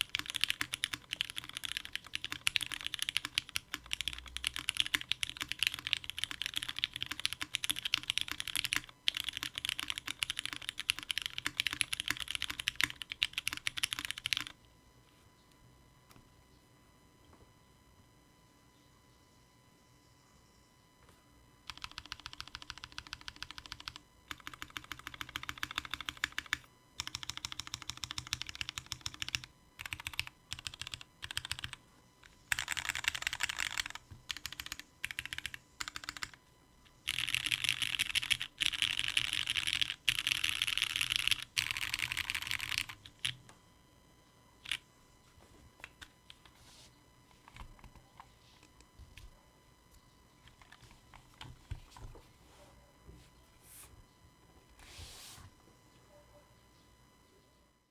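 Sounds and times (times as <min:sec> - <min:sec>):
mechanical keyboard typing: 0:00.0 - 0:14.6, 0:21.6 - 0:36.4, 0:37.0 - 0:43.4, 0:47.4 - 0:49.3.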